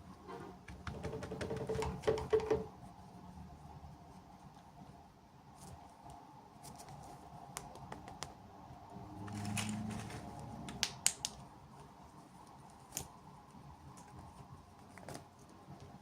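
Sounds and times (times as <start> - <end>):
packaging rustle: 9.2 - 10.7.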